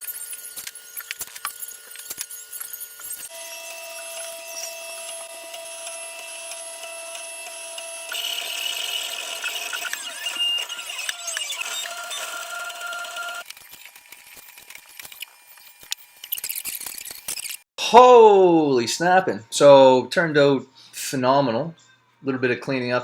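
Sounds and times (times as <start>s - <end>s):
stepper motors whining: 0.0s - 17.6s.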